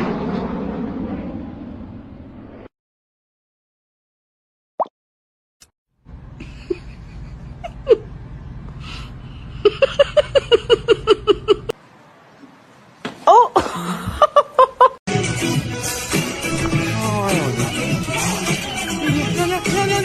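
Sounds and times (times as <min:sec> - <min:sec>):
person laughing: 0:06.4 - 0:08.1, 0:09.4 - 0:11.7, 0:13.3 - 0:15.0
music: 0:15.1 - 0:20.0.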